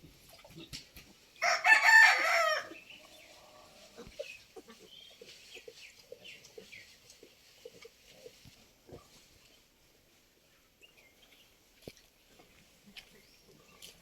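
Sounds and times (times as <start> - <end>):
rooster crowing: 1.4 - 2.7
chickens clucking and chirping: 2.4 - 9.7.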